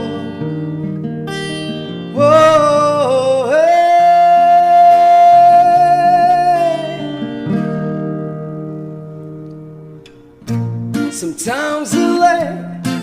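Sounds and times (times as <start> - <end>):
man singing: 0.0 - 0.6, 2.1 - 7.4, 11.0 - 13.0
acoustic guitar: 0.0 - 13.0.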